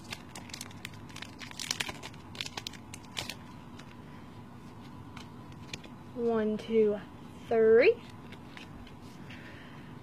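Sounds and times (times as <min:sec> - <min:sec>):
foil pack crinkling and tearing: 0:00.0 - 0:04.0.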